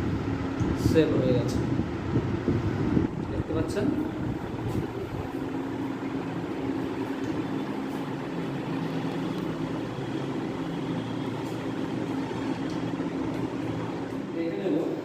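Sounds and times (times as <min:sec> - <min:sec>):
low mechanical hum: 0:00.0 - 0:15.0.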